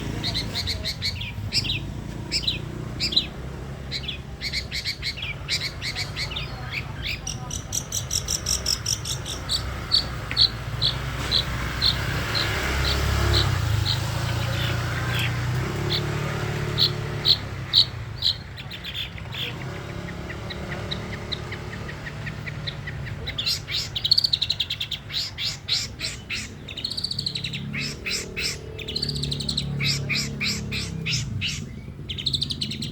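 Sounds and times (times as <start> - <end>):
bird chirping and trilling: 0.0 - 32.9.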